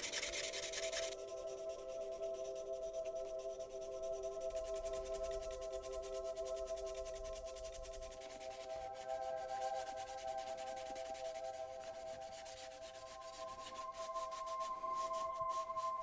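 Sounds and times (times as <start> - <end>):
hand sanding plastic: 0.0 - 1.2.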